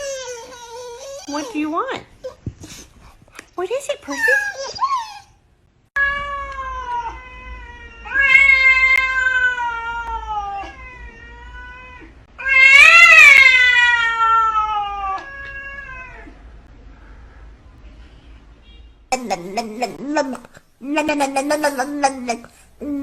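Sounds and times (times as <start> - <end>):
cat yowling: 6.0 - 16.4.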